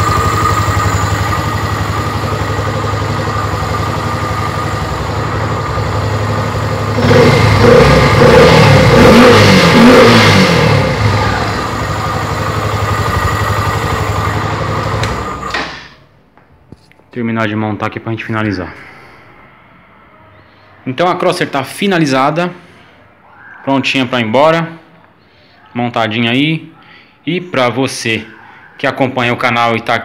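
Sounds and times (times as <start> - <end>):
motorcycle engine idling and revving: 0.0 - 16.0.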